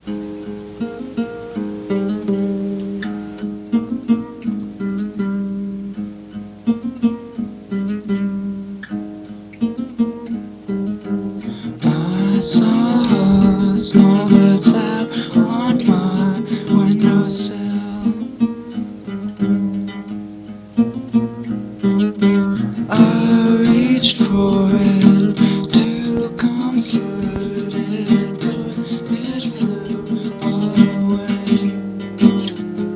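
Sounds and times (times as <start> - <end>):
acoustic guitar picking: 0.0 - 32.9
high sliding melody: 9.6 - 20.0, 20.8 - 32.9.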